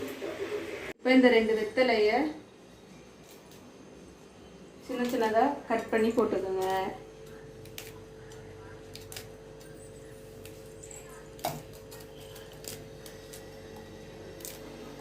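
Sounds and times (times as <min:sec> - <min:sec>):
faint hum: 0:00.0 - 0:15.0
leaves being cut with snips: 0:11.4 - 0:14.8.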